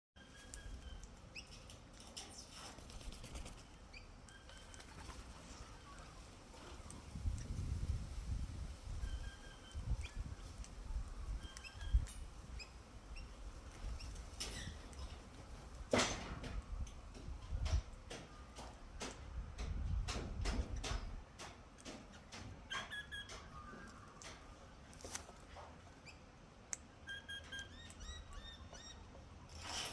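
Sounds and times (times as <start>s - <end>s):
birds clicking and tapping: 0.2s - 29.9s
birds wings fluttering: 2.2s - 7.2s
bird chirp: 27.0s - 29.2s.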